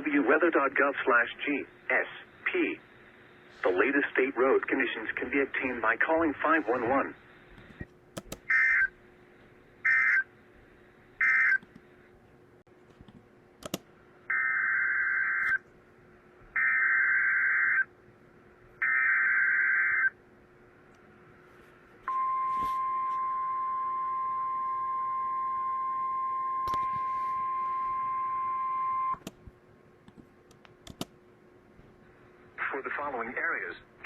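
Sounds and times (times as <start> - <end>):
steady single-pitched warning tone: 22.1 - 29.2.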